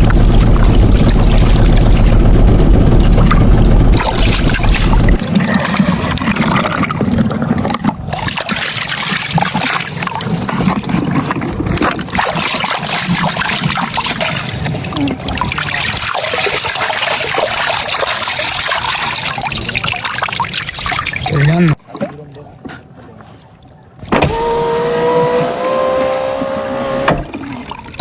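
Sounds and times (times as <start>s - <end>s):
low rumble: 0.0s - 5.2s
water splashing and trickling: 0.0s - 24.1s, 26.4s - 28.0s.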